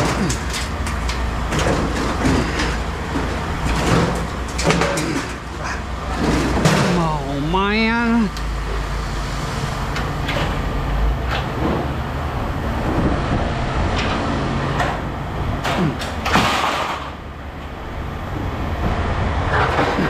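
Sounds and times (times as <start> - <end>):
knocks and clanks: 0.0 - 7.3, 9.9 - 12.0, 12.8 - 17.7, 18.4 - 20.0
low rumble: 0.0 - 20.0.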